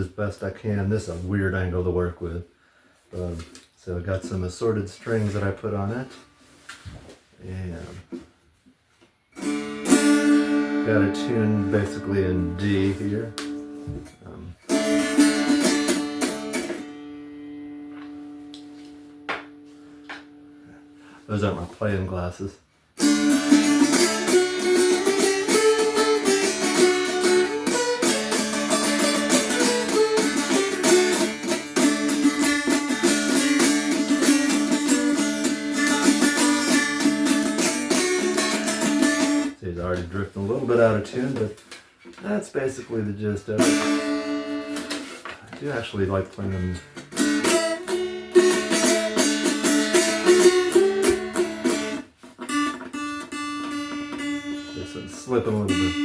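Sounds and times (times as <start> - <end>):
dulcimer strummed quickly: 9.4 - 13.8, 14.7 - 17.4, 23.0 - 39.5, 43.5 - 45.2, 46.5 - 56.0.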